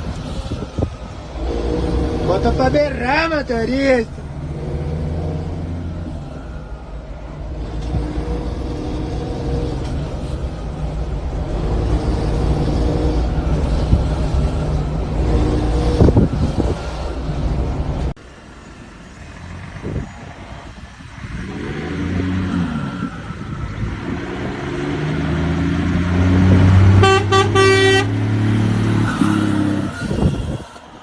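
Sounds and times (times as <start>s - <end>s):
truck diesel engine revving: 0.0s - 18.2s, 19.2s - 31.0s
short horn toots: 27.0s - 28.2s.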